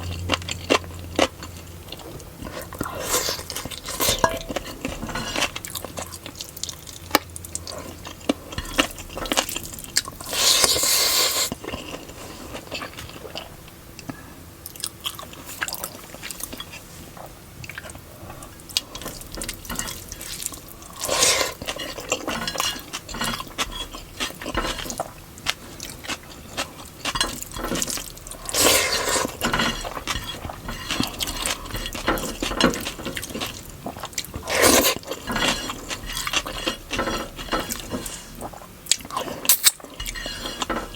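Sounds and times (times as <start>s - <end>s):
chewing and wet mouth sounds: 0.0s - 40.8s.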